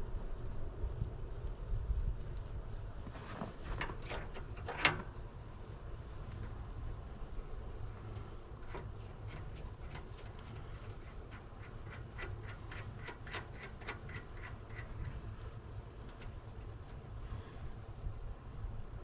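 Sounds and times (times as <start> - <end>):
ratchet wrench clicking: 9.9 - 15.2.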